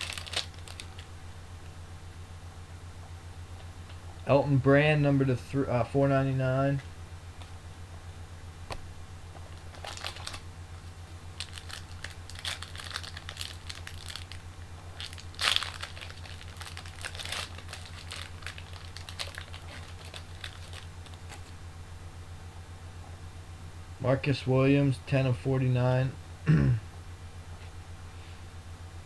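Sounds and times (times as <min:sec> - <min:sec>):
foil wrapper crinkling and tearing: 0:00.0 - 0:01.1, 0:09.4 - 0:21.6
low electrical hum: 0:00.0 - 0:29.0.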